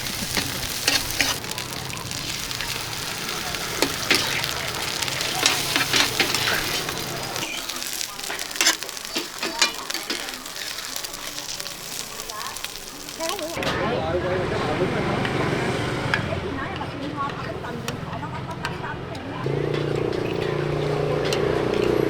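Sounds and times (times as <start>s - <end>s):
utensil scraping a pan: 0.0s - 13.5s
food sizzling in a pan: 0.0s - 13.6s.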